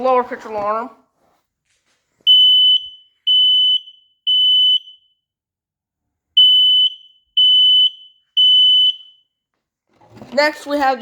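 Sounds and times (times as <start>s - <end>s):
smoke alarm beeps: 2.3s - 5.3s, 6.4s - 9.4s.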